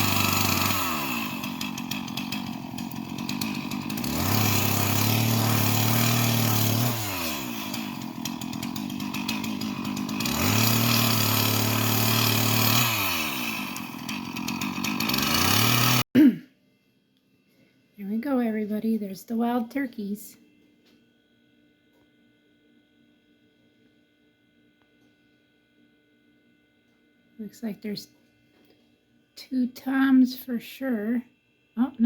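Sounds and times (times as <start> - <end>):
chainsaw revving and idling: 0.0 - 16.1.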